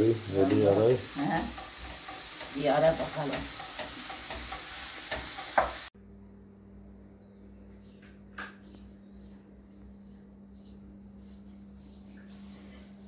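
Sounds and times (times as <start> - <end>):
food sizzling in a frying pan: 0.0 - 5.9.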